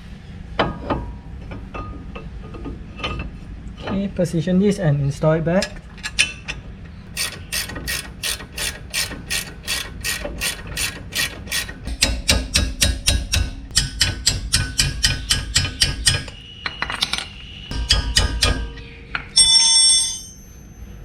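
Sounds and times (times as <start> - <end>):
ratchet wrench clicking: 7.2 - 12.8.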